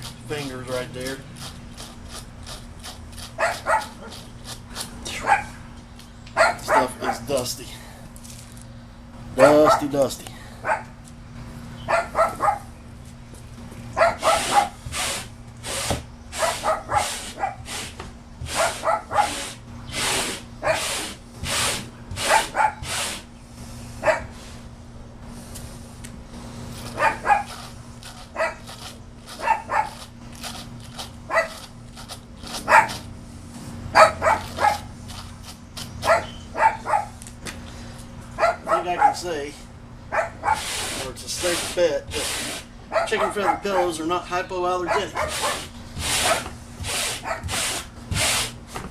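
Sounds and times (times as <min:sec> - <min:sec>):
steady low hum: 0:00.0 - 0:48.9
dog barking: 0:03.4 - 0:04.1, 0:05.2 - 0:05.6, 0:06.4 - 0:07.3, 0:09.4 - 0:09.9, 0:11.9 - 0:12.7, 0:14.0 - 0:14.8, 0:16.4 - 0:17.6, 0:18.5 - 0:19.4, 0:20.6 - 0:20.8, 0:22.3 - 0:22.8, 0:24.0 - 0:24.3, 0:27.0 - 0:27.6, 0:28.4 - 0:28.6, 0:29.4 - 0:30.0, 0:31.3 - 0:31.6, 0:32.6 - 0:33.0, 0:34.0 - 0:34.9, 0:36.0 - 0:37.2, 0:38.4 - 0:39.2, 0:40.1 - 0:40.7, 0:42.9 - 0:44.0, 0:44.8 - 0:46.4, 0:47.2 - 0:47.5.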